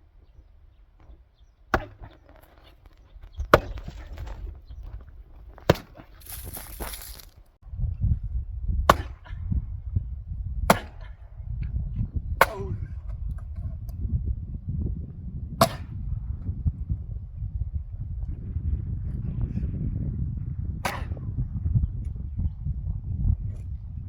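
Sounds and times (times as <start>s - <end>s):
axe chopping firewood: 1.7s - 2.6s, 3.5s - 4.4s, 5.4s - 7.2s, 8.8s - 9.4s, 10.7s - 11.2s, 12.4s - 12.8s, 15.6s - 16.0s, 20.8s - 21.2s.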